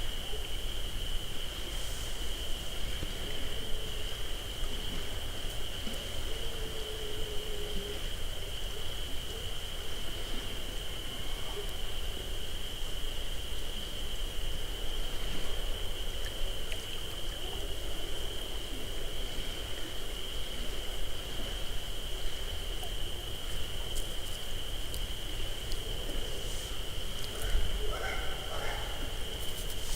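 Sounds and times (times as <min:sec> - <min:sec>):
crickets trilling: 0:00.0 - 0:29.9
microphone rumble and hiss: 0:00.0 - 0:29.9
faint clicks: 0:23.9 - 0:25.8.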